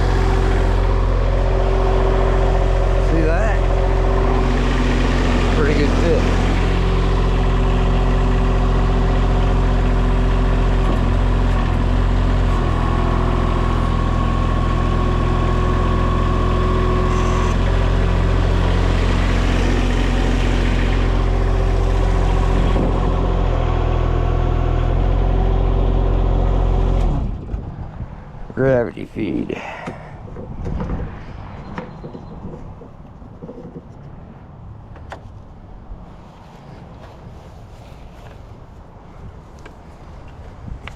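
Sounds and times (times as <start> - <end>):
engine idling: 0.0 - 27.2.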